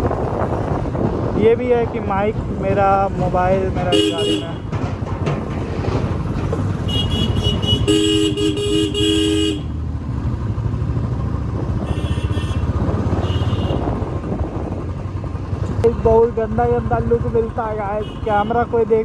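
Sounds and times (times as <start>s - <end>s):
motorcycle engine running: 2.4s - 18.5s
vehicle horn honking: 3.9s - 4.6s, 6.8s - 9.7s, 11.8s - 14.0s, 18.0s - 18.6s.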